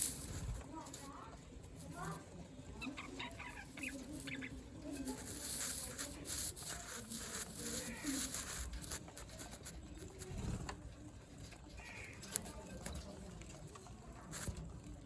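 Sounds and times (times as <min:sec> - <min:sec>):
beaks pecking at food: 0:00.0 - 0:14.8
birds clucking: 0:02.8 - 0:04.8.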